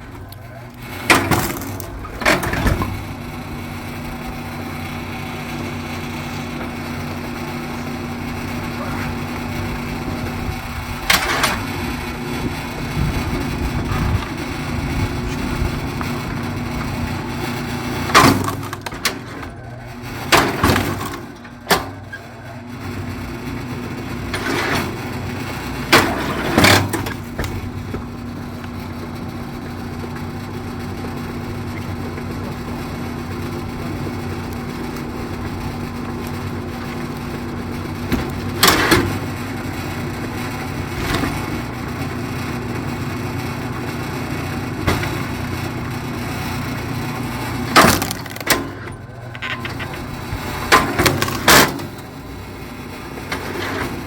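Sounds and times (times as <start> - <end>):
log splitter engine running: 0.0 - 54.0
logs cracking and splitting: 44.2 - 48.7.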